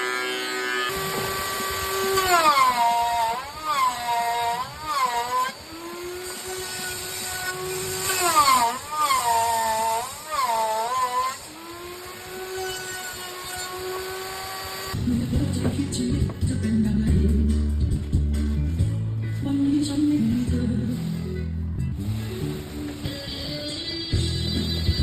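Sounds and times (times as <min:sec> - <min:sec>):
power tool cutting wood: 0:00.0 - 0:15.0.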